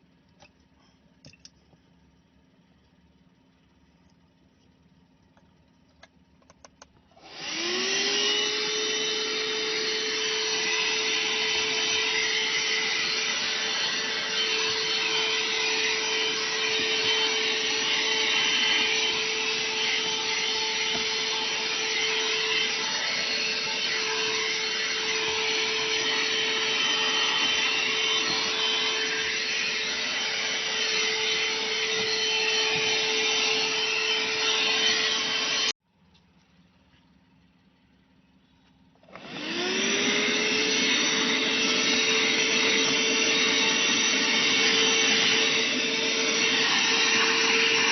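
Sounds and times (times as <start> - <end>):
car vacuum cleaner motor: 7.2 - 35.8, 39.0 - 47.9.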